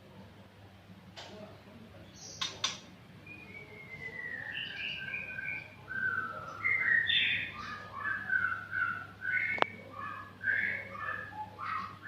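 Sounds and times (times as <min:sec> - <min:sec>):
songbird singing whistled notes: 0:03.2 - 0:12.0.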